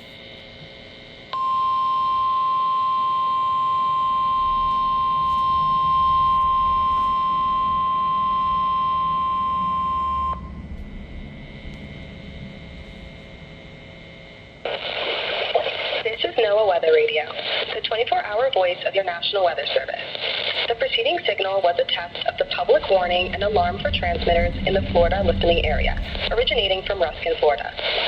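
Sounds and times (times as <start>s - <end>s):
steady alarm tone: 0.0s - 17.3s, 21.0s - 28.0s
faint radio hiss: 10.7s - 28.0s.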